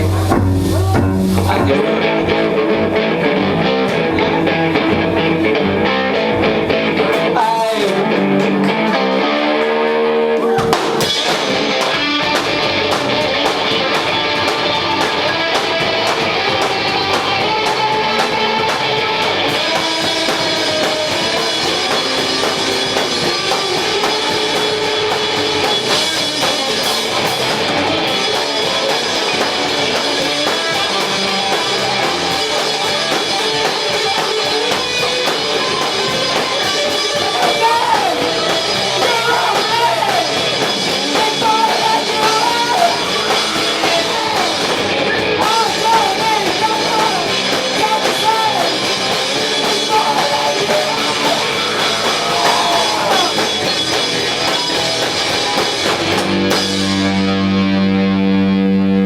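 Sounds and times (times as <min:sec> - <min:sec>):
drum kit: 0:00.0 - 0:59.0
electric guitar: 0:00.0 - 0:59.0
person singing: 0:07.0 - 0:09.8, 0:36.8 - 0:44.8, 0:45.4 - 0:53.7.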